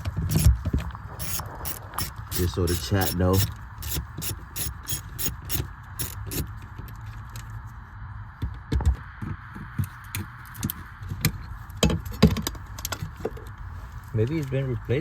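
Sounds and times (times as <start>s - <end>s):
hand tools clicking on metal: 0.0s - 0.5s, 1.2s - 6.4s
steady background hum: 0.0s - 15.0s.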